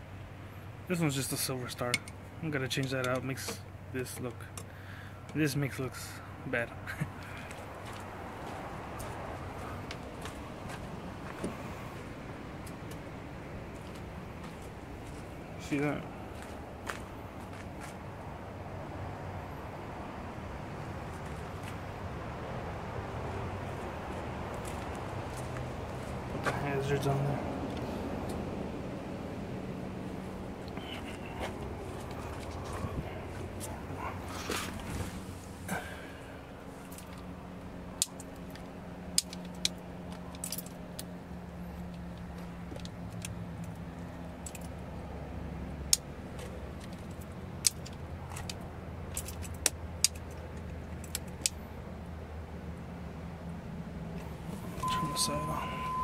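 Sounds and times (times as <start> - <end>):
outdoor background noise: 0.0 - 56.0
car engine idling: 19.6 - 56.0
sharp clicks and light rattles: 36.8 - 44.8, 45.8 - 51.7.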